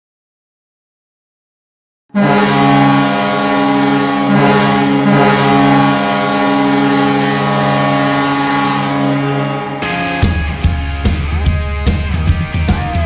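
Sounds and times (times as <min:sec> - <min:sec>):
goal horn blast: 0:02.1 - 0:10.7.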